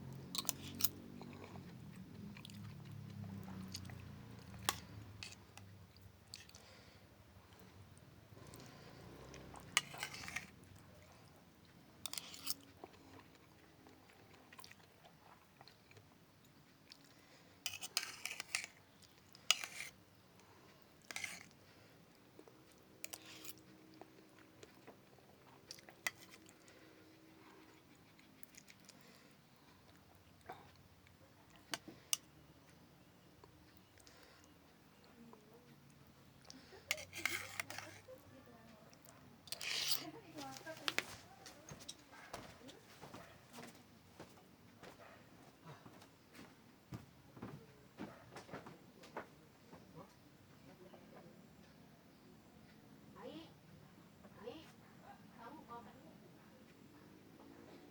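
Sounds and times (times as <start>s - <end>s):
chewing and mouth sounds: 0.0s - 32.3s.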